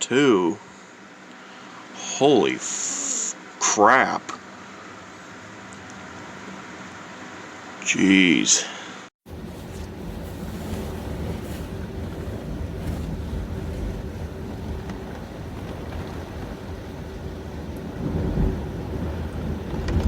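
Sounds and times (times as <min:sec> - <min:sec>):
low rumble of wind: 0:09.2 - 0:20.0
heavy rain pouring: 0:09.3 - 0:20.0.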